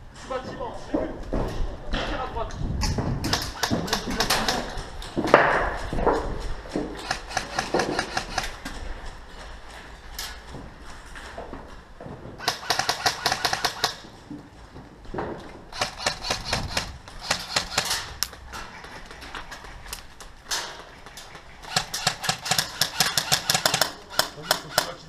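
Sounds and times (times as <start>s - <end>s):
airsoft rifle firing bursts: 3.2s - 4.8s, 7.0s - 8.6s, 12.4s - 14.1s, 15.7s - 18.2s, 21.6s - 25.0s.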